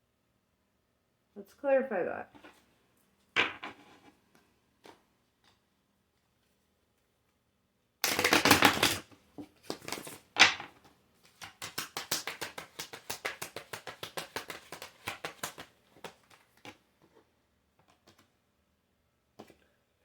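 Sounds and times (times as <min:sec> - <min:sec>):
cards being shuffled: 0:08.0 - 0:17.2, 0:17.8 - 0:18.3
quick card clicks: 0:11.3 - 0:16.4
card snapping: 0:11.3 - 0:16.7.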